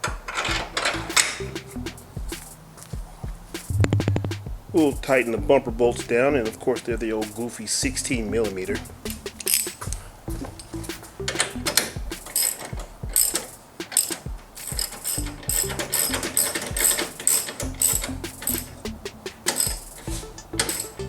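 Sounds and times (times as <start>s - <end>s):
ratchet wrench clicking: 8.5s - 21.0s.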